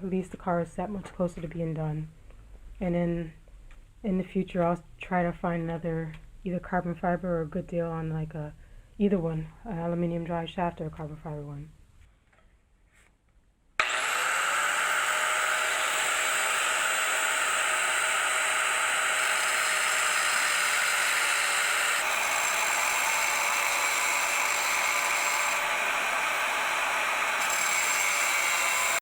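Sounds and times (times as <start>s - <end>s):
power grinder cutting metal: 13.8s - 29.0s.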